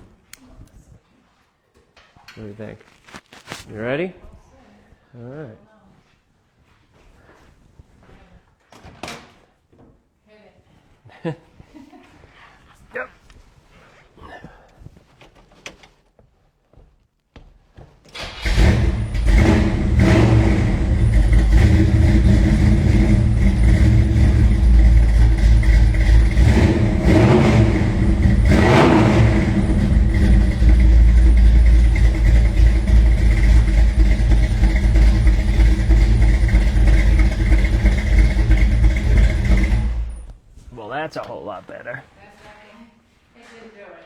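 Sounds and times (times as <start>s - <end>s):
car engine starting and running: 18.2s - 40.4s
engine throttle blips: 18.2s - 40.4s.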